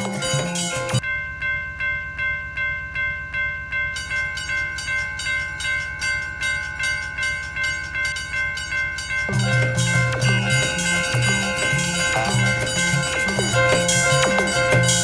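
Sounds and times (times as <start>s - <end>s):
music: 0.0s - 1.0s, 4.0s - 15.0s
level crossing warning bell: 0.0s - 15.0s
train rumbling: 9.3s - 15.0s.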